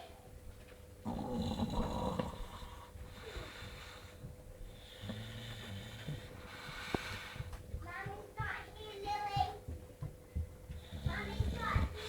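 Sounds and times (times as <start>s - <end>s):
dogs snoring: 1.0s - 7.6s, 10.7s - 12.0s
low buzzing snore: 1.0s - 7.6s, 10.8s - 12.0s.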